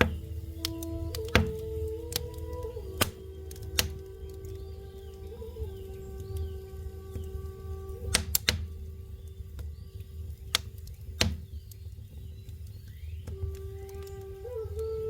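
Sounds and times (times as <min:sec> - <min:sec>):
burning wood popping: 0:00.0 - 0:05.2, 0:08.1 - 0:14.1
flute holding a low note: 0:00.0 - 0:10.4, 0:13.2 - 0:15.0
campfire crackling: 0:00.0 - 0:15.0
low steady rumble: 0:00.0 - 0:15.0.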